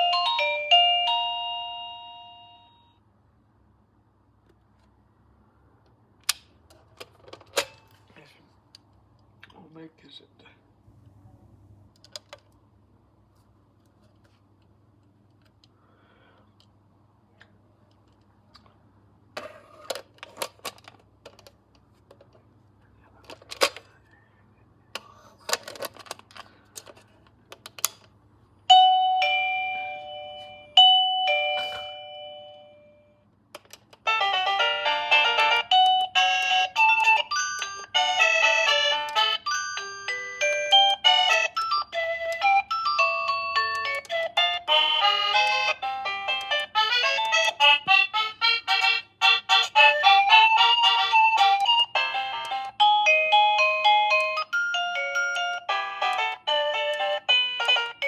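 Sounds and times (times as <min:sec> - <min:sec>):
doorbell chime melody: 0:00.0 - 0:03.0, 0:28.7 - 0:33.2, 0:34.1 - 0:47.4, 0:50.3 - 0:58.0
two-tone doorbell chime: 0:00.0 - 0:03.0, 0:28.7 - 0:33.2, 0:34.2 - 0:47.4, 0:51.7 - 0:58.0.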